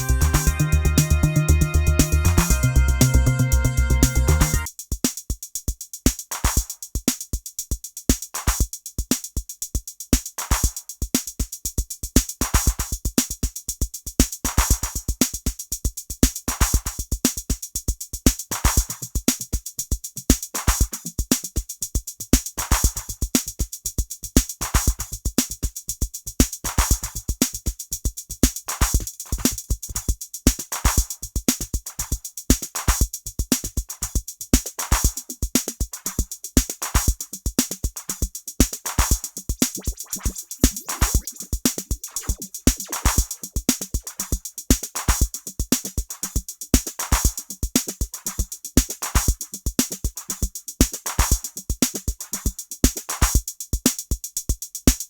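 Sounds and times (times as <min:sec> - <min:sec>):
stuttering electronic drum beat: 0:00.0 - 0:04.8, 0:31.8 - 0:53.4.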